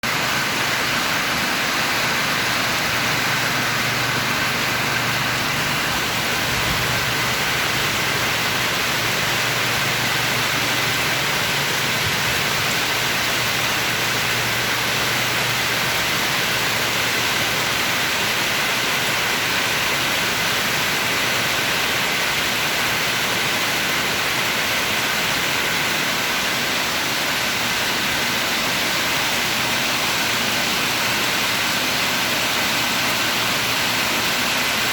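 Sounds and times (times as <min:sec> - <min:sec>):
heavy rain falling: 0:00.0 - 0:34.9.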